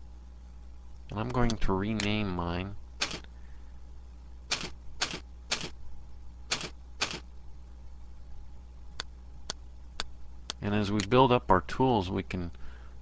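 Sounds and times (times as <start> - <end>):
sharp clicks: 1.0 - 2.2, 3.0 - 3.3, 4.5 - 5.8, 6.5 - 7.2.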